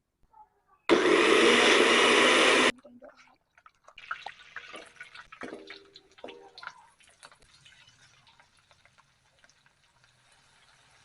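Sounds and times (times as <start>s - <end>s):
water dripping: 2.7s - 10.7s.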